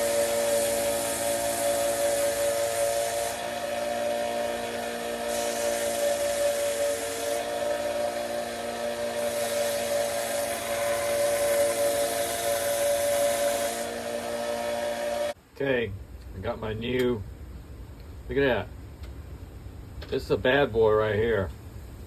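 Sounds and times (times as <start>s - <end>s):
grinding hiss of sanding: 0.0s - 15.4s
rotary tool high whine: 0.0s - 15.4s.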